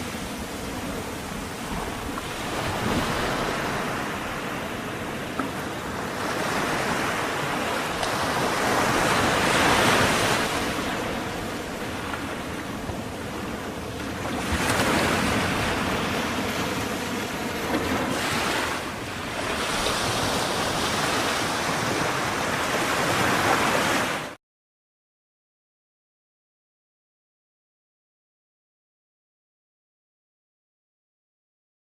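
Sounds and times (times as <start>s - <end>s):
ocean waves washing: 0.0s - 24.4s.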